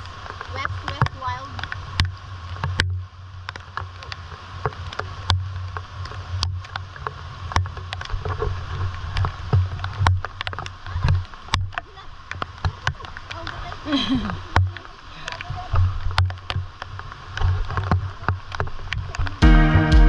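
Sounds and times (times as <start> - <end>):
river water rushing: 0.0 - 20.0
low rumble: 19.4 - 20.0.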